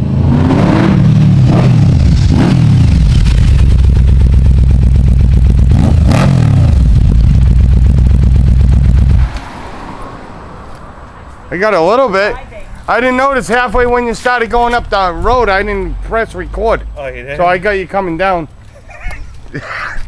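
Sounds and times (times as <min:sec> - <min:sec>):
motorcycle engine revving: 0:00.0 - 0:10.6.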